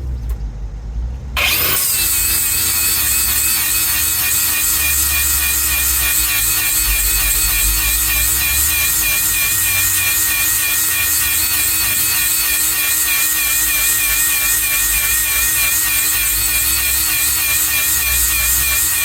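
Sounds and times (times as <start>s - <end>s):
power grinder whining: 1.4s - 19.0s.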